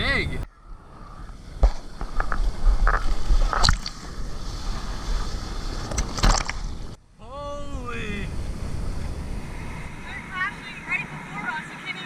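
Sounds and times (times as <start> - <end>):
low buffeting rumble: 0.0 - 6.0, 6.6 - 12.0
ocean surf and splashing water: 0.5 - 7.0
sharp splashes and knocks: 1.6 - 4.1, 5.9 - 6.8.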